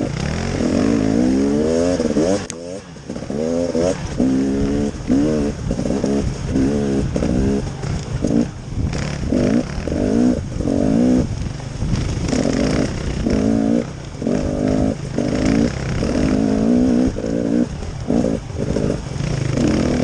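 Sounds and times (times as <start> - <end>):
off-road vehicle engine revving: 0.0 - 20.0.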